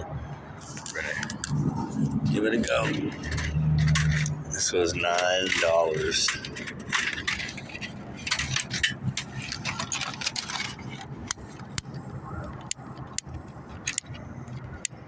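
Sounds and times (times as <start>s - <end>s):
light metallic rattles: 2.3s - 15.0s
packaging crinkling and rustling: 9.3s - 11.6s
sharp clicks: 11.3s - 15.0s.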